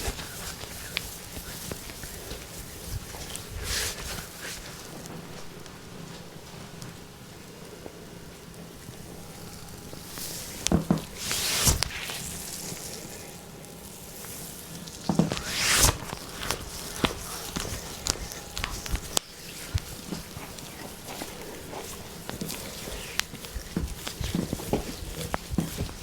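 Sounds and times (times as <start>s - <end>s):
hands rubbing skin: 0.0s - 5.5s, 10.1s - 13.4s, 14.1s - 26.0s.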